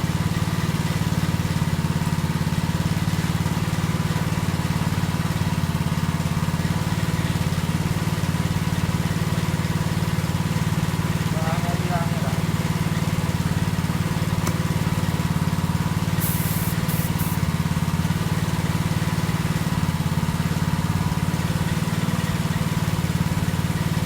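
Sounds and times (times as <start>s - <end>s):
small engine idling: 0.0s - 24.0s
short high hisses: 16.2s - 17.5s.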